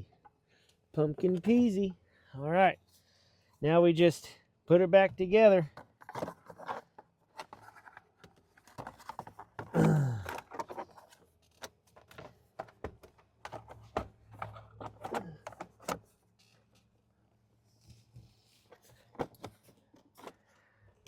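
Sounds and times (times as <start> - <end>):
person grunting: 9.8 - 10.4.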